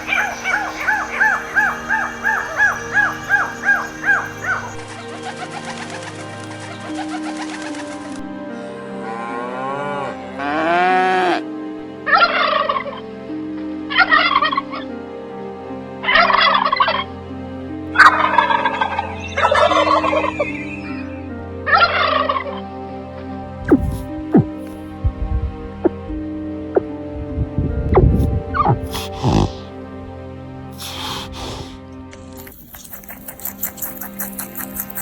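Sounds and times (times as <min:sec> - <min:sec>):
bird gliding calls: 0:00.0 - 0:05.8, 0:23.7 - 0:24.8.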